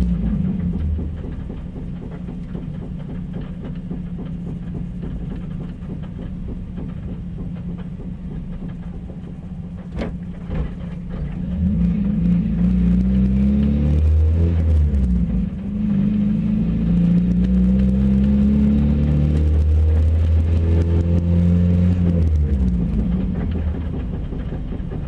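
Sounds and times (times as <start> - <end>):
engine revving: 0.0 - 2.1, 11.2 - 25.0
car engine idling with knock: 0.0 - 25.0.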